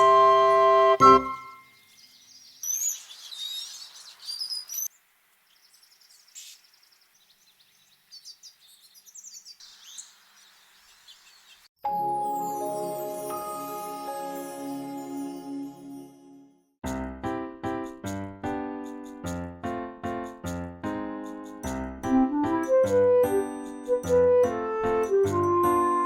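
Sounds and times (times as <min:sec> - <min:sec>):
background music: 0:00.0 - 0:01.6, 0:11.8 - 0:26.0
songbirds chirping: 0:01.6 - 0:11.7.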